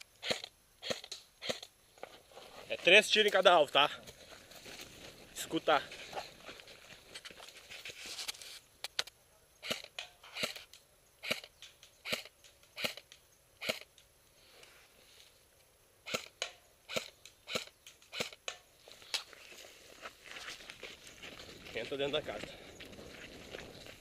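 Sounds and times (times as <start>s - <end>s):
airsoft gun shots: 0.2s - 1.7s, 11.2s - 13.0s, 16.1s - 18.5s.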